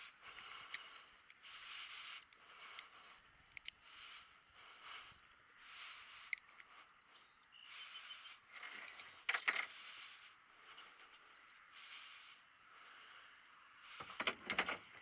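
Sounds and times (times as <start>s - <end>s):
steady outdoor hiss: 0.0s - 15.0s
sharp clicks and knocks: 14.0s - 15.0s.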